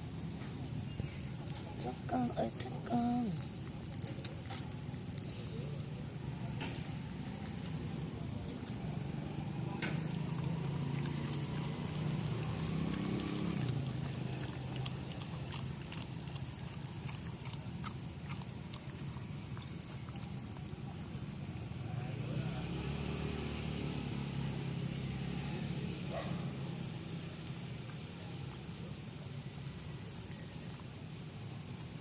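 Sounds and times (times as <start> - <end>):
puppies grunting and snuffling: 1.4 - 21.6.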